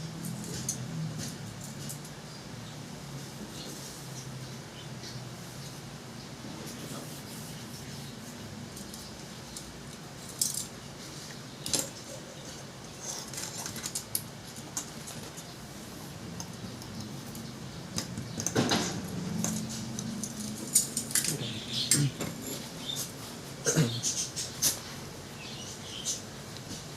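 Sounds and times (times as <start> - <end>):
metal parts clinking: 10.2 - 10.8.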